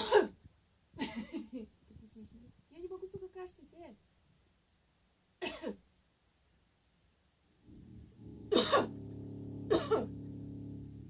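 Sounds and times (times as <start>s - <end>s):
woman coughing: 0.0s - 0.4s, 5.4s - 5.8s, 8.5s - 8.9s, 9.7s - 10.1s
low buzzing animal call: 7.7s - 11.0s.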